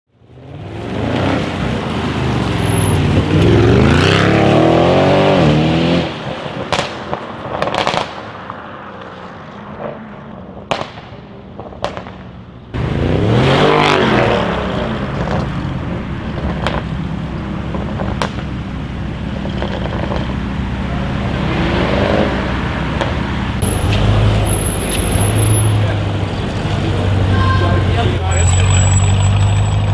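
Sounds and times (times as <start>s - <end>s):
exhaust crackles and pops: 6.5s - 8.6s, 10.6s - 12.4s, 15.1s - 17.0s, 17.6s - 20.6s
car engine revving hard: 12.8s - 15.4s.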